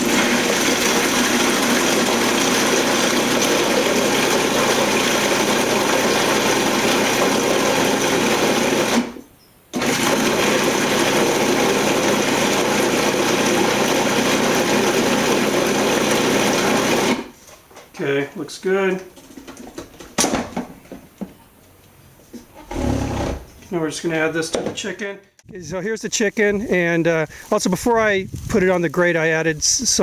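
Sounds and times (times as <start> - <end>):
food processor motor running: 0.0 - 9.2, 9.8 - 17.3.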